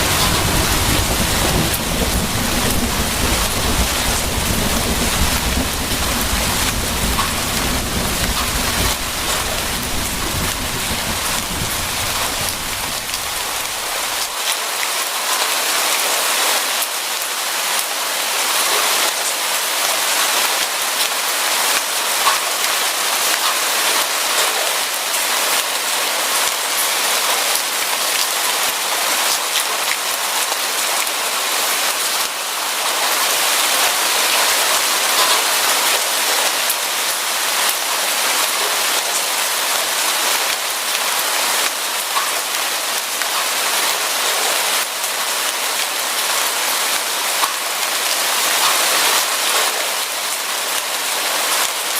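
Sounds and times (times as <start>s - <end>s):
low rumble of thunder: 0.0s - 14.3s
heavy rain pattering: 0.0s - 51.9s.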